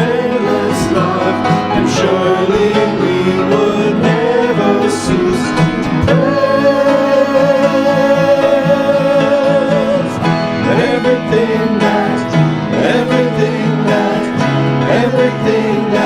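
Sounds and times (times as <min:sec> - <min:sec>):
person singing a hymn: 0:00.0 - 0:16.0
plucked string instruments: 0:00.0 - 0:16.0.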